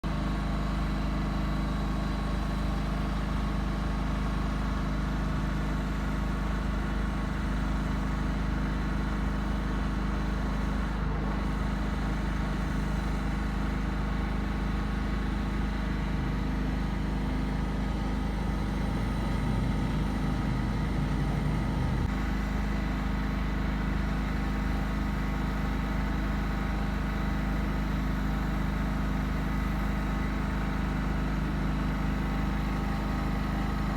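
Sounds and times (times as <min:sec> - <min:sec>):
machine hum: 0:16.0 - 0:22.3.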